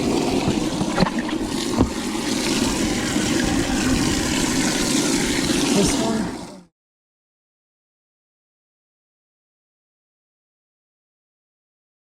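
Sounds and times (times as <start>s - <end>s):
boat running across water: 0.0s - 6.6s.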